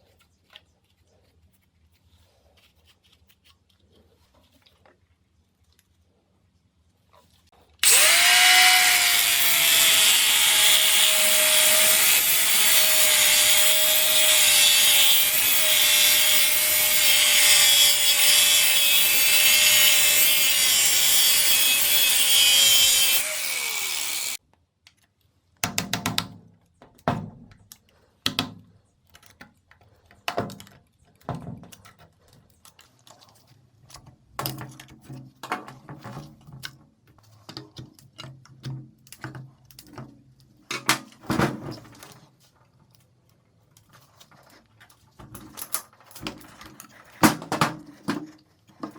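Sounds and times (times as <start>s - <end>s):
electric power tool whining: 7.8s - 24.4s.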